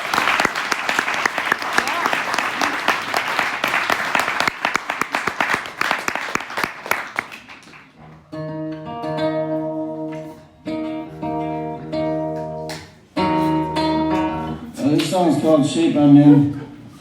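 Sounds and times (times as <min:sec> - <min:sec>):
audience applause: 0:00.0 - 0:08.0
acoustic guitar strumming: 0:08.0 - 0:16.0.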